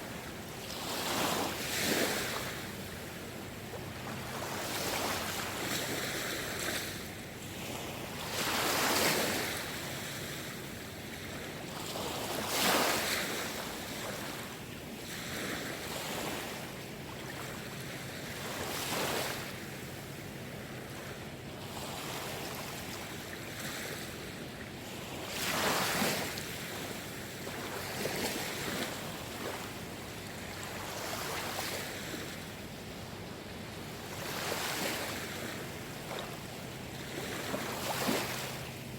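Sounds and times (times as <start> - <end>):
sea waves washing in: 24.9 - 38.9.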